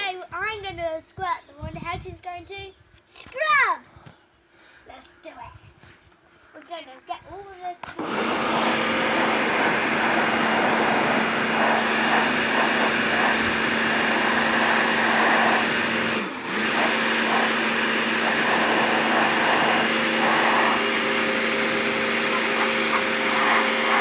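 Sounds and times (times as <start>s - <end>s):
pressure washer motor hum: 7.8s - 24.0s
water jet spraying a wall: 7.9s - 24.0s.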